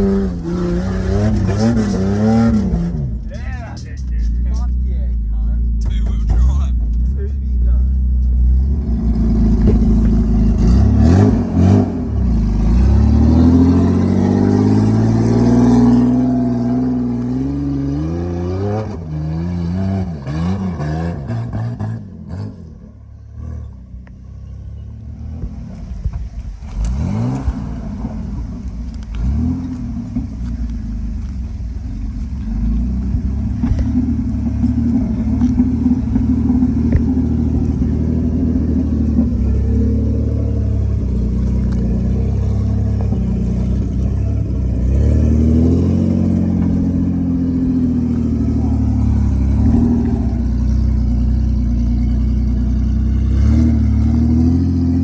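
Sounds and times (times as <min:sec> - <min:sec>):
engine revving hard: 0:00.0 - 0:03.2, 0:08.6 - 0:22.8, 0:26.7 - 0:28.2, 0:33.6 - 0:51.7, 0:53.1 - 0:55.0.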